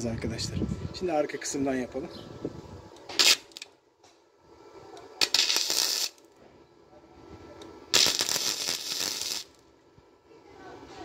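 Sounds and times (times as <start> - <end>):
welder arc crackling: 2.9 - 3.9, 4.7 - 6.4, 7.4 - 9.7.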